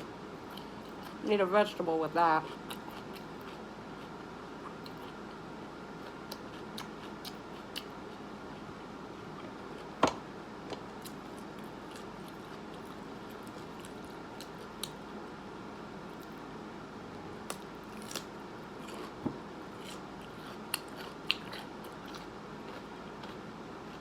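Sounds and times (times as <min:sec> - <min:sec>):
person chewing: 0:02.5 - 0:05.2, 0:06.0 - 0:08.7, 0:11.0 - 0:15.0, 0:17.4 - 0:24.0.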